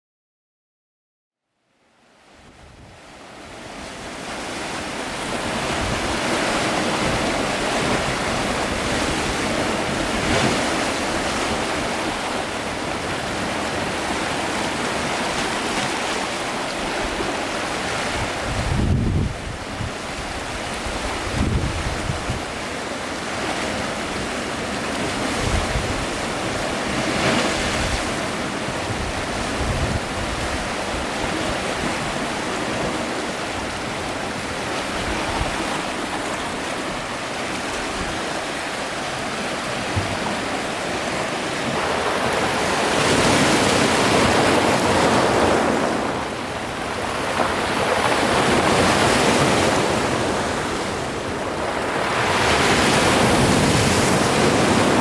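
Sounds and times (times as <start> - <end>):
sea waves washing in: 3.0 - 55.0
wind buffeting microphone: 16.9 - 22.7, 25.0 - 32.6.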